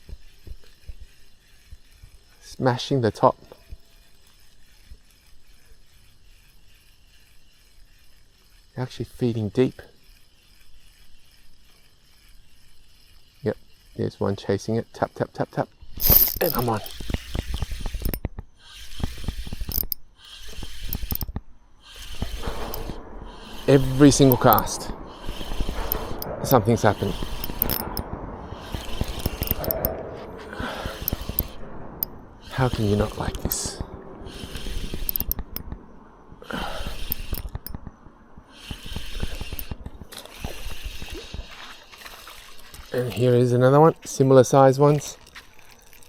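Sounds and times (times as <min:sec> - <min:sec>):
fishing reel clicking: 0:00.0 - 0:46.0.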